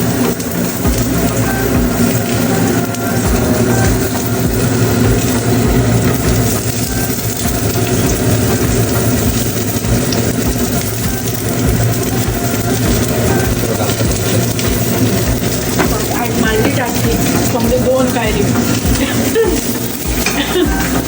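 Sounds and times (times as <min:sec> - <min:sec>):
hiss: 0:00.0 - 0:21.0
low motor hum: 0:00.0 - 0:21.0.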